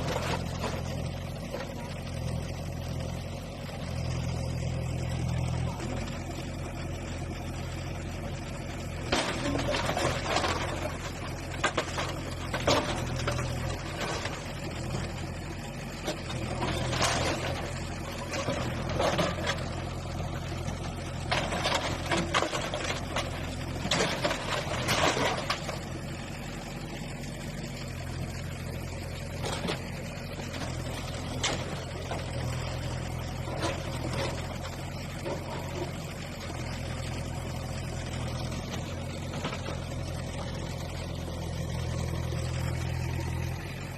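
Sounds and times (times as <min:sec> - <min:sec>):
heavy machine engine running: 0:00.0 - 0:43.9
rubble crashing and crunching: 0:08.8 - 0:15.2, 0:15.9 - 0:26.1, 0:29.3 - 0:40.2.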